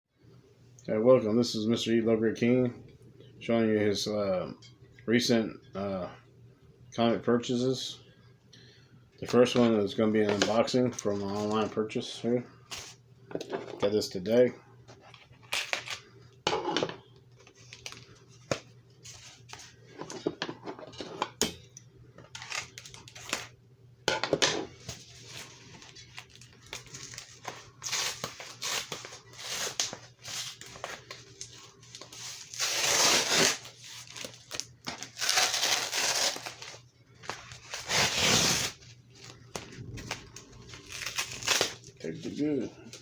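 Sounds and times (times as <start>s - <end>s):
packaging tearing and crinkling: 22.3s - 23.5s, 24.9s - 42.0s
loud packaging rips: 22.4s - 23.5s, 26.1s - 36.8s, 37.5s - 38.8s, 39.9s - 41.9s.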